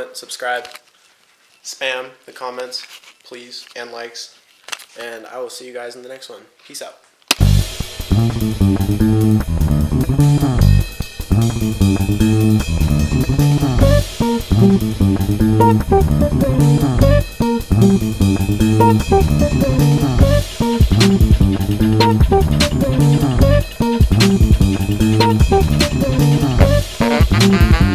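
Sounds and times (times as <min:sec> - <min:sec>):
bass and guitar riff: 0:07.4 - 0:27.9
light drums: 0:10.6 - 0:27.9.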